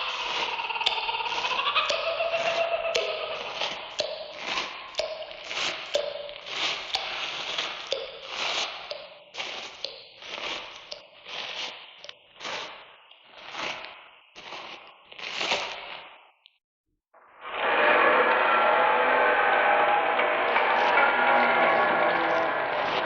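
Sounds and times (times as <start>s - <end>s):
rhythmic scraping strokes: 17.4s - 23.0s.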